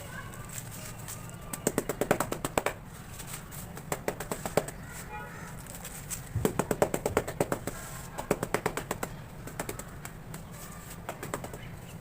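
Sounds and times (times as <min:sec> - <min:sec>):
tapping on dried cement: 0:01.4 - 0:02.8, 0:03.7 - 0:04.8, 0:05.6 - 0:11.7.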